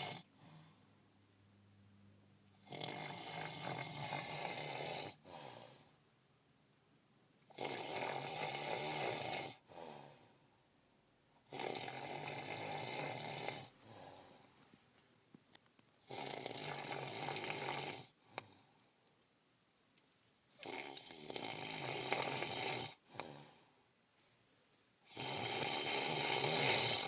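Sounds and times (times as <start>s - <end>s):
person snoring heavily: 2.6s - 5.6s, 11.5s - 14.4s, 16.0s - 18.1s, 20.6s - 23.6s, 25.1s - 27.0s.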